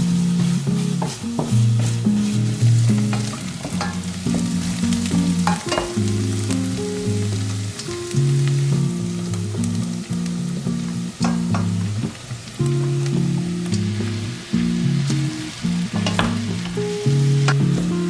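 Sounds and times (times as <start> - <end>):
background music: 0.0 - 18.0
food sizzling in a pan: 0.0 - 18.0
utensil clicking against pan: 0.4 - 6.7, 11.2 - 14.1, 15.0 - 18.0.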